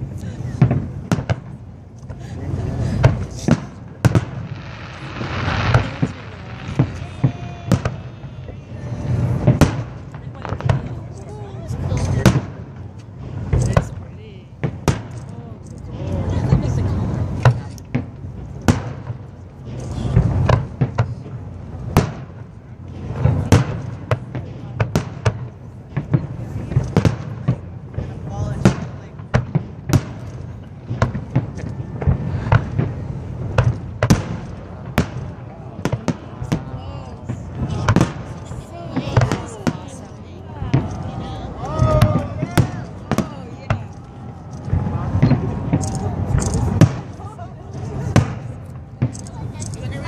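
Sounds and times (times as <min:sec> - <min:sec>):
fireworks bangs: 0:00.0 - 0:50.0
low rolling rumble: 0:00.8 - 0:24.8, 0:25.4 - 0:50.0
rush of noise: 0:02.2 - 0:12.2.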